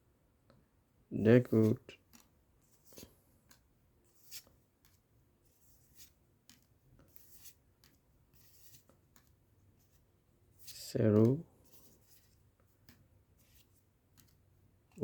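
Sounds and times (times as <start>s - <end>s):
cards rustling and scraping: 1.4s - 15.0s.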